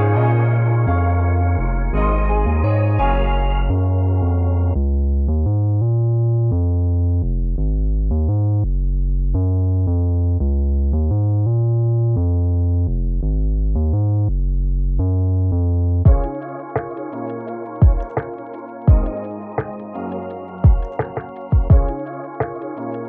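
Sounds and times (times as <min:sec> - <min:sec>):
soft synthesizer music: 0:00.0 - 0:04.9, 0:16.1 - 0:23.0.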